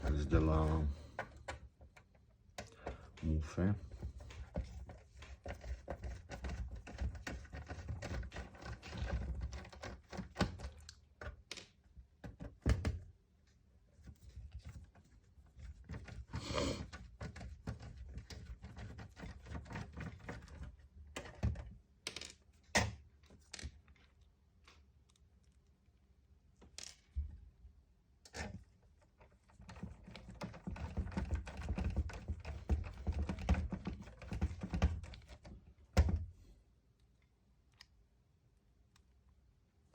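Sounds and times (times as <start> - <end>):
light clicks and taps of small parts: 21.1 - 25.8, 36.9 - 38.0, 38.8 - 39.4.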